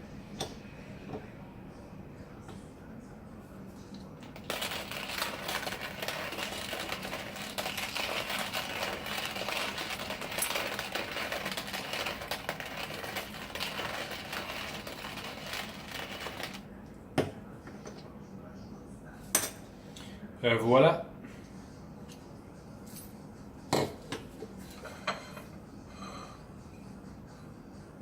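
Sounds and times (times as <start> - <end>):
manual coffee grinder crunching: 4.2 - 16.6.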